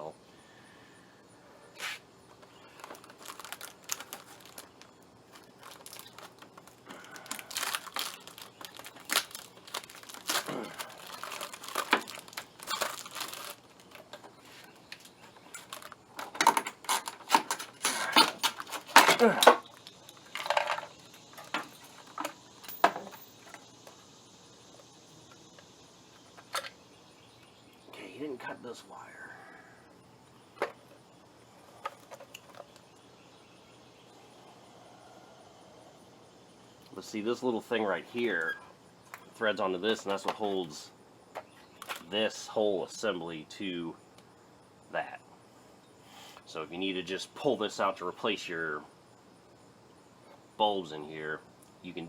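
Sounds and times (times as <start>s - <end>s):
plastic parts crinkling and clicking: 2.3s - 23.6s, 31.6s - 32.8s, 41.4s - 42.1s.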